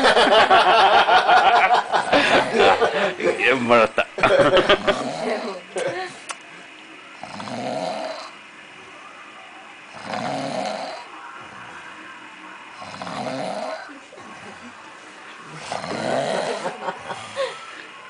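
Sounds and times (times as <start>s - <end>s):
man snoring heavily: 4.8s - 5.5s, 7.2s - 8.4s, 9.9s - 11.1s, 12.8s - 13.9s, 15.6s - 16.8s.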